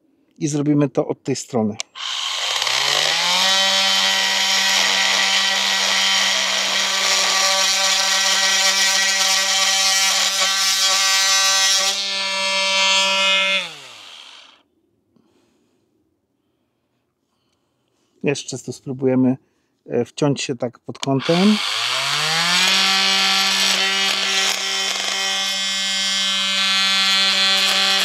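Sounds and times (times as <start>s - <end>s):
oscillating multi-tool whine: 1.9s - 14.6s, 21.2s - 28.0s
blade cutting chipboard rasp: 2.0s - 14.5s, 21.2s - 28.0s.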